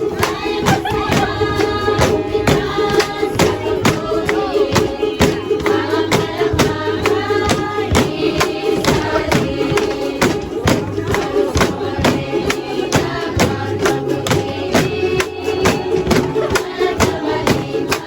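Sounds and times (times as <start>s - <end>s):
steady beat: 0.0s - 18.0s
voices singing together: 0.0s - 18.0s
held low tone: 0.1s - 7.4s.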